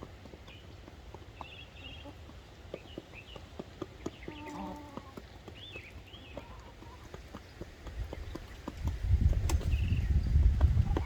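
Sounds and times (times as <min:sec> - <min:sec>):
drawn-out chicken call: 0:04.1 - 0:07.4.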